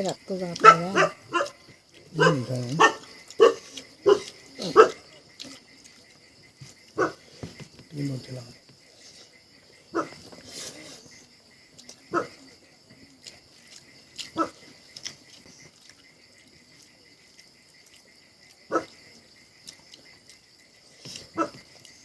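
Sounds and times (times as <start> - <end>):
dog barking: 0.6 - 5.2, 6.9 - 7.2, 9.9 - 10.3, 12.1 - 12.5, 14.3 - 14.6, 18.7 - 19.0, 21.4 - 21.7.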